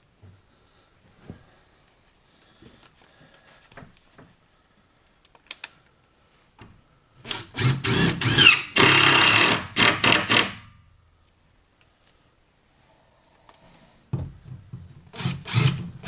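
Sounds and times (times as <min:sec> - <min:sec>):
drill driving screws into wood: 0:07.2 - 0:10.7, 0:15.1 - 0:16.0.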